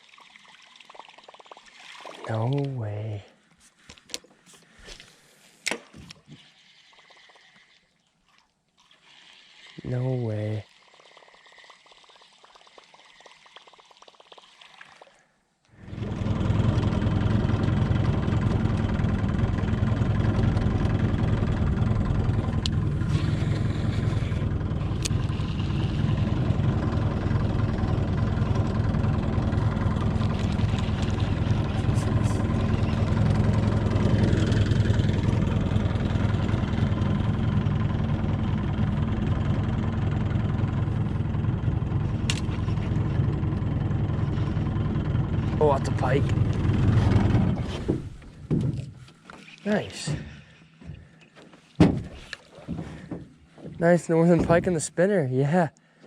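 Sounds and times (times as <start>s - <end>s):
boat motor running: 15.7s - 54.8s.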